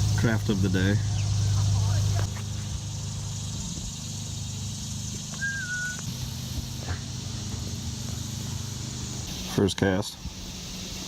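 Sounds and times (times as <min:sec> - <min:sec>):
small motor humming: 0:00.0 - 0:11.0
steady high hiss: 0:00.0 - 0:11.0
whistled call stepping down: 0:05.1 - 0:07.0.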